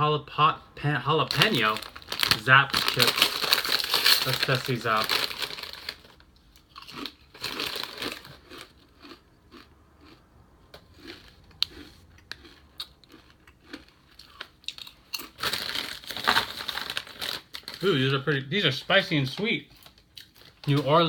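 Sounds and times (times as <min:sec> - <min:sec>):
bag crinkling: 0:01.2 - 0:06.3, 0:07.0 - 0:08.7, 0:15.4 - 0:18.1
chewing crunchy chips: 0:01.3 - 0:18.1, 0:19.7 - 0:21.0.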